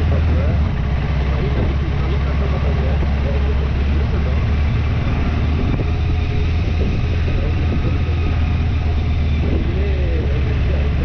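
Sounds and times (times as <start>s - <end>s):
motorcycle engine rumble: 0.0s - 11.0s
wind noise: 0.0s - 11.0s.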